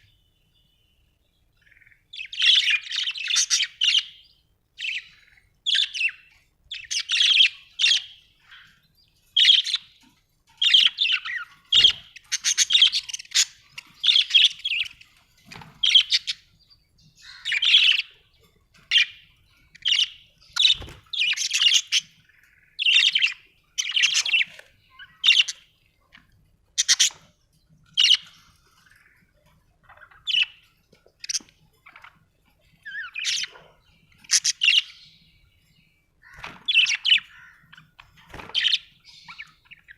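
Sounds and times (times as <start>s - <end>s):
budgerigar chirping: 10.6s - 15.0s, 17.1s - 18.2s, 19.8s - 25.7s, 26.7s - 27.2s, 32.8s - 35.2s.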